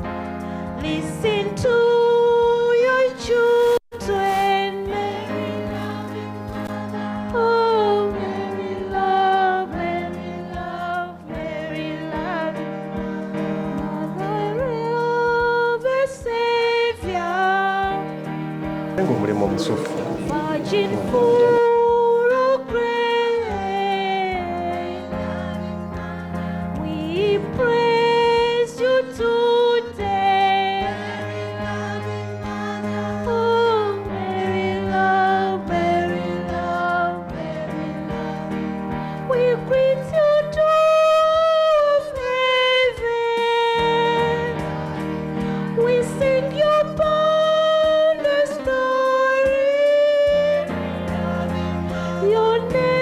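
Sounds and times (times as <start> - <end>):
instrumental accompaniment: 19.0 - 21.6.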